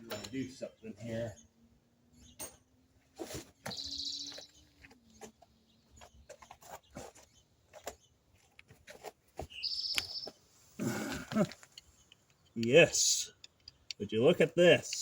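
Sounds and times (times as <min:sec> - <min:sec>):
tools clicking and tapping on metal: 0:00.0 - 0:00.4, 0:11.5 - 0:14.1, 0:14.8 - 0:15.0.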